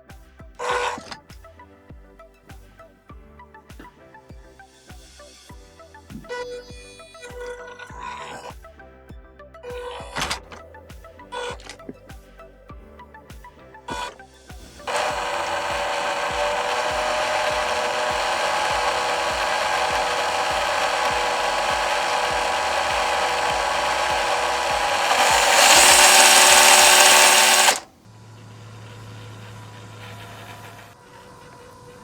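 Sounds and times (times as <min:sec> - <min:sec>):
electric motor whining: 0:00.6 - 0:01.2, 0:11.4 - 0:11.8, 0:13.9 - 0:27.9.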